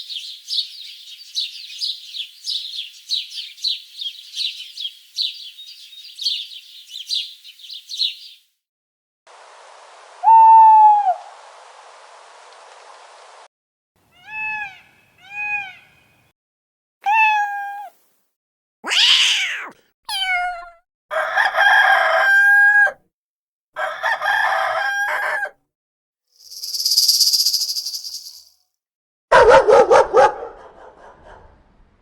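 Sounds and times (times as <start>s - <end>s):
rooster crowing: 21.1s - 23.0s, 23.8s - 25.5s.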